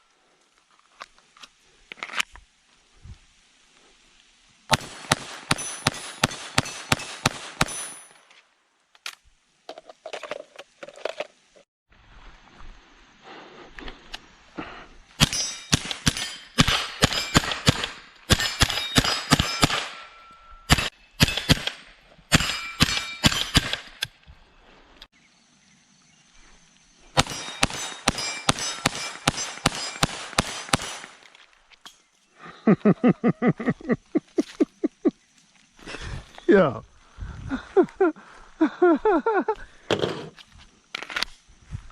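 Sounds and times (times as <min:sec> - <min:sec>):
rapid gunshots: 0:04.7 - 0:07.8, 0:15.2 - 0:20.0, 0:20.7 - 0:24.0, 0:27.2 - 0:31.2.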